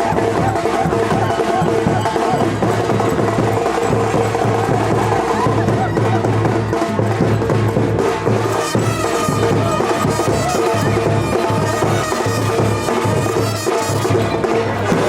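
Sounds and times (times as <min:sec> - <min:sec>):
steady percussion: 0:00.0 - 0:15.0.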